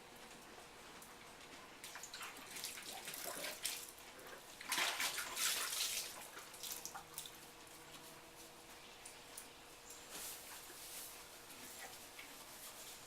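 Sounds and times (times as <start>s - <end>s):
horse slurping water: 1.9s - 7.3s.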